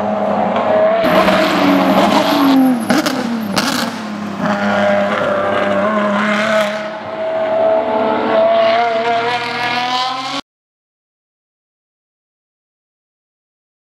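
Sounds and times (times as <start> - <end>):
race car engine running hard: 0.0 - 10.4.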